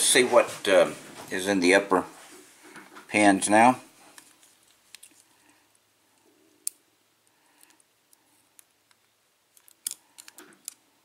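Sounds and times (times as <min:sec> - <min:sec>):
small metal clicks of lock pins: 0:09.6 - 0:10.8.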